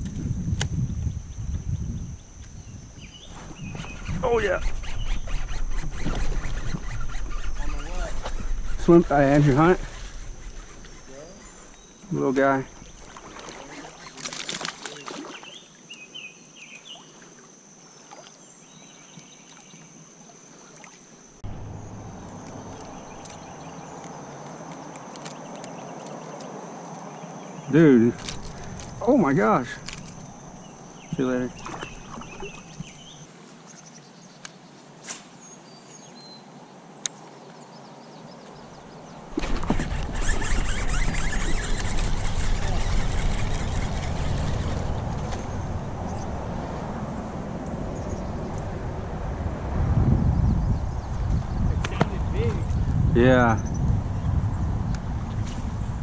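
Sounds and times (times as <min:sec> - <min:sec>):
high insect drone: 0:00.0 - 0:34.8
faint riverside ambience: 0:00.0 - 0:56.0
bird chirping: 0:00.9 - 0:14.3, 0:14.9 - 0:17.1, 0:21.4 - 0:34.8, 0:35.4 - 0:46.4
water splashing around kayak: 0:05.3 - 0:15.9, 0:16.8 - 0:26.5, 0:28.2 - 0:33.2, 0:39.3 - 0:48.6
high bird chirps: 0:29.8 - 0:33.2.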